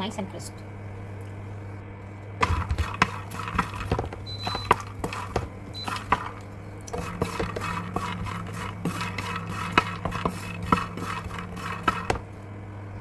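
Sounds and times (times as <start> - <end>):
seeds clattering in a frying pan: 2.4 - 12.3.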